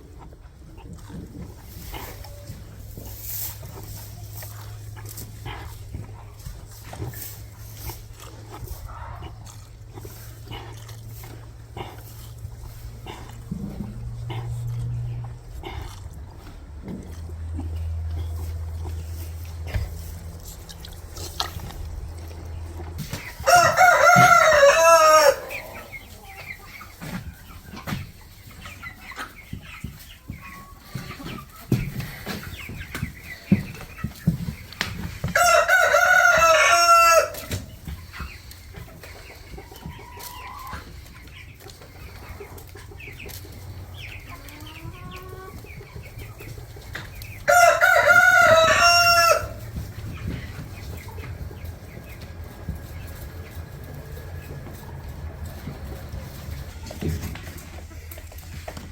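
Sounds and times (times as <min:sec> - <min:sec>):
chicken clucking and calling: 0:00.0 - 0:58.9
rooster crowing: 0:23.4 - 0:25.9, 0:35.4 - 0:37.5, 0:47.5 - 0:49.6.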